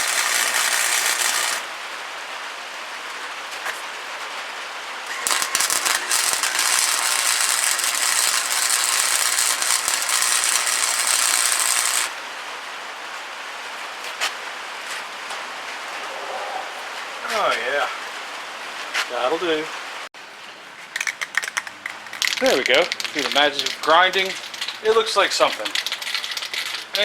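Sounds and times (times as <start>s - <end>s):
grinder grinding metal: 0.0s - 1.7s, 5.1s - 12.2s, 21.9s - 27.0s
steady rain hiss: 0.0s - 27.0s.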